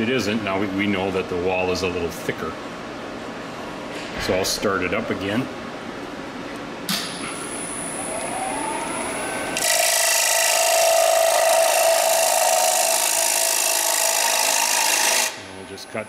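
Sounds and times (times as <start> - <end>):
lathe motor whine: 7.6 - 15.4
tool scraping spinning wood: 9.6 - 15.4.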